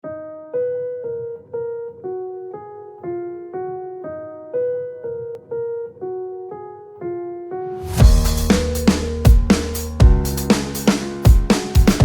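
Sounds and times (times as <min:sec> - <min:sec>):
keyboard melody: 0:00.0 - 0:12.0
low bass line: 0:08.0 - 0:10.5.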